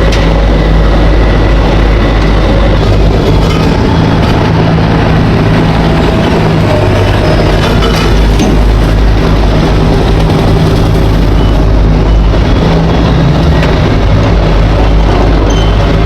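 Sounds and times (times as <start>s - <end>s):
diesel construction machinery running: 0.0s - 16.0s.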